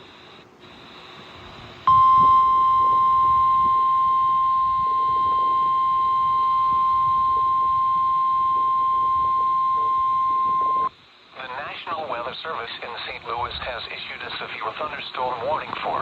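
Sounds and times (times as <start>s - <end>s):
loud steady alarm beep: 0.0s - 10.9s
faint radio hiss: 0.0s - 16.0s.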